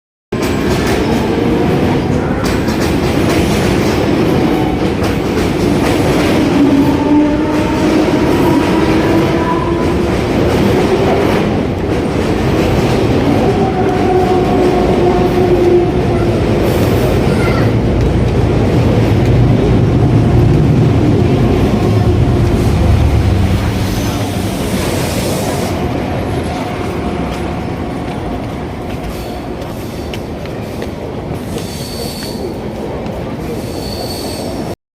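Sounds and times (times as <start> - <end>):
train wheels rumbling on rails: 0.3 - 34.8
whining train tones: 4.3 - 26.7.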